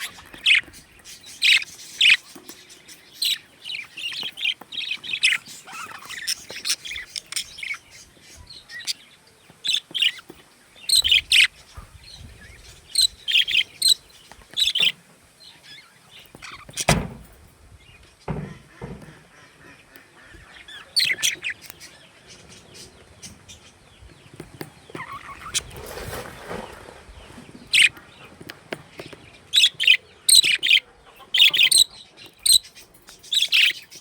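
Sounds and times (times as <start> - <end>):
budgerigars chirping: 0.0 - 17.2, 18.2 - 26.2, 27.5 - 34.0.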